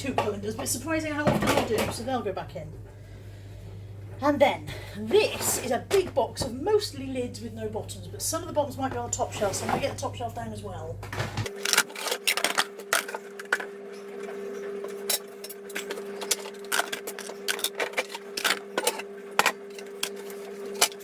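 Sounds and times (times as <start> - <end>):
steady low hum: 0.0 - 11.5.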